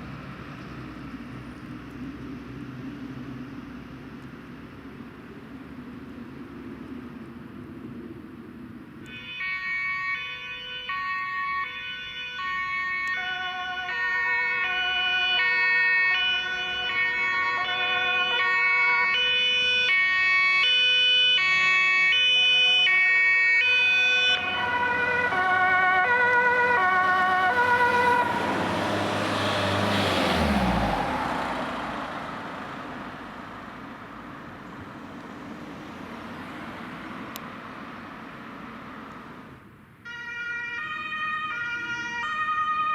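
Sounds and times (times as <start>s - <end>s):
vehicle engine and tyre noise: 0.0s - 42.9s
two-tone emergency siren: 9.0s - 33.1s, 40.0s - 42.9s.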